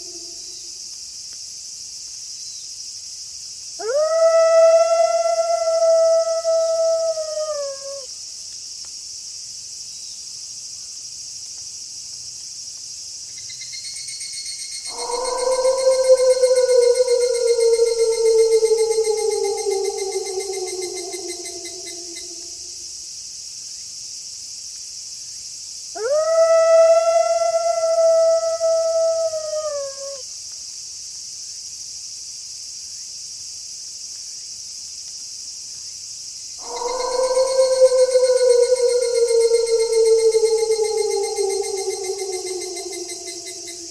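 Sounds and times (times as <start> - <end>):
wolf howling: 0.0 - 0.6, 3.8 - 8.1, 14.8 - 22.8, 26.0 - 30.2, 36.6 - 43.9
crickets chirring: 0.0 - 0.8, 2.3 - 8.1, 13.3 - 23.0, 25.4 - 30.2, 36.3 - 43.9
pulsing insect trill: 0.0 - 0.8, 3.8 - 8.1, 13.6 - 22.9, 26.0 - 30.2, 36.6 - 43.9.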